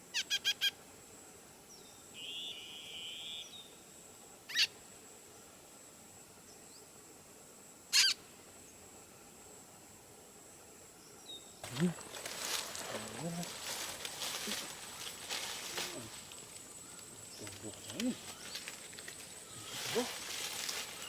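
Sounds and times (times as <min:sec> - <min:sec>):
bird harsh squawks: 0:04.5 - 0:04.7, 0:08.0 - 0:08.2
birds chirping: 0:11.6 - 0:21.0.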